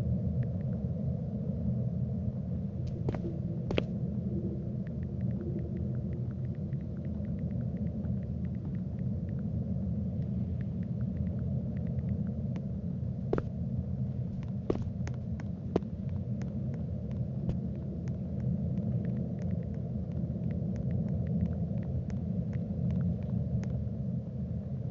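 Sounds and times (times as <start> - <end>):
steady low rumble: 0.0 - 24.9
faint crackling clicks: 4.8 - 13.6, 14.2 - 23.8.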